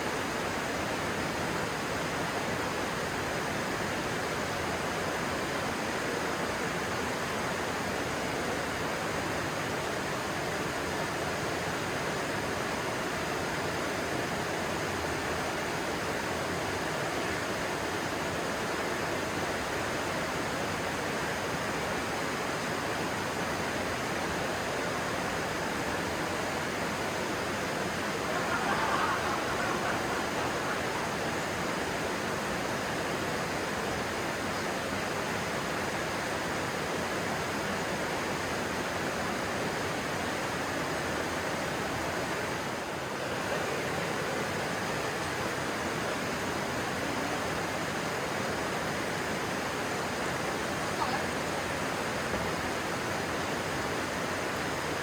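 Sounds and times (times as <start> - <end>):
stream water rushing over rocks: 11.4 - 55.0.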